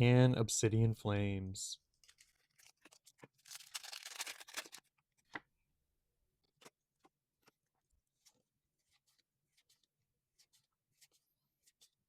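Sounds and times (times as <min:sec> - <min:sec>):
foil wrappers crinkling: 0:01.9 - 0:05.0.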